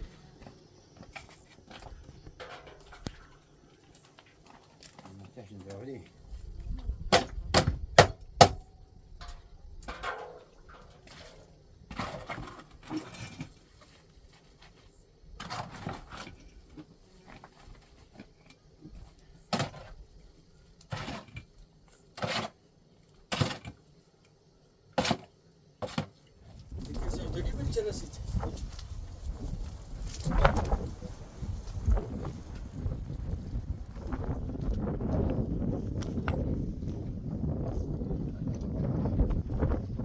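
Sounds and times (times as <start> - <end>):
soft scraping and rustling: 10.0 - 22.7, 25.8 - 37.1.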